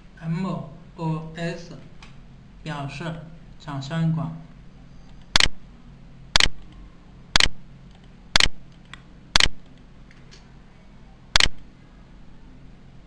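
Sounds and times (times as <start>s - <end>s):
faint steady hum: 0.0s - 13.0s
sharp clicks: 5.1s - 5.6s, 6.4s - 6.8s, 7.4s - 10.4s, 11.4s - 11.6s.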